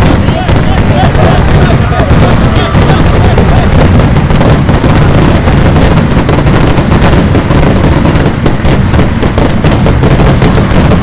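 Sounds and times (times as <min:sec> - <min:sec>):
fireworks barrage: 0:00.0 - 0:11.0.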